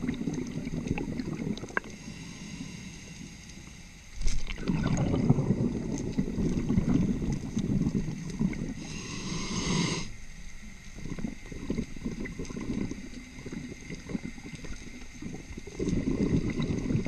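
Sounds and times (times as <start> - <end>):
underwater exhaled bubbles: 0.0 - 17.0
regulator hiss: 1.2 - 4.2, 7.9 - 17.0.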